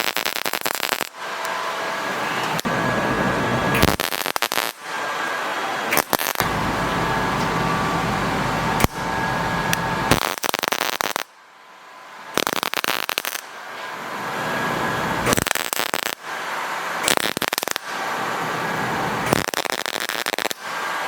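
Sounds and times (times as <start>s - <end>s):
welding arc crackling: 0.0s - 5.2s, 5.8s - 11.4s, 12.3s - 21.0s
steady hum: 1.2s - 4.0s, 6.4s - 10.2s, 13.9s - 15.4s.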